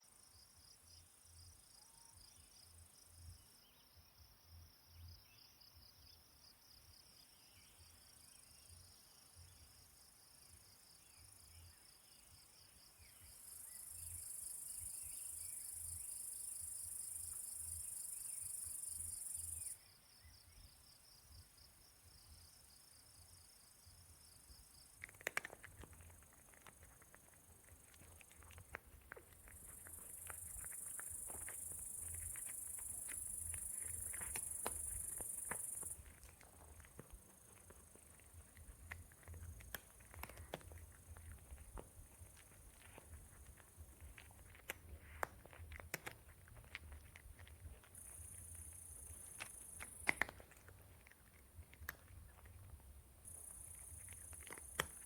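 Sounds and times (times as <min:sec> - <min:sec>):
insects chirping: 0:00.0 - 0:55.0
clicks and taps: 0:25.0 - 0:55.0.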